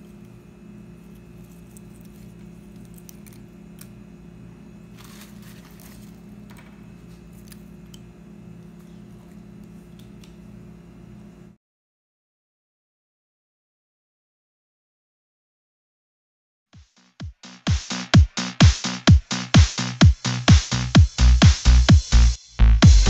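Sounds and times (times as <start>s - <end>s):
low room hum: 0.0s - 11.6s.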